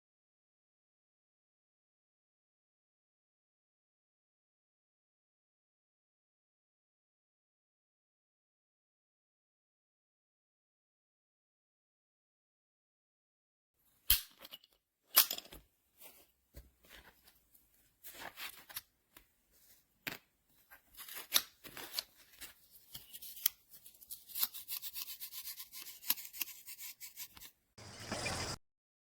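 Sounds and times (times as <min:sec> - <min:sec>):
metal tool parts clicking: 0:14.1 - 0:15.6
rasping metal scrapes: 0:23.1 - 0:28.6.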